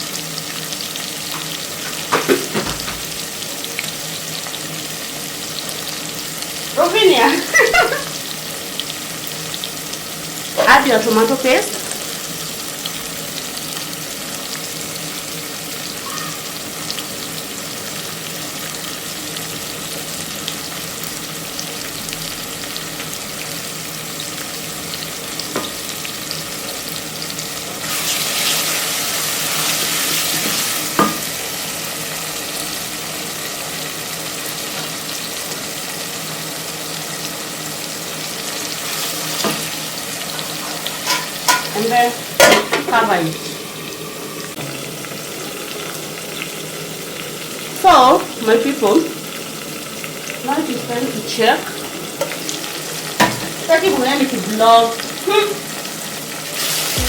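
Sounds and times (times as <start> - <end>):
curry sizzling in oil: 0.0 - 57.0.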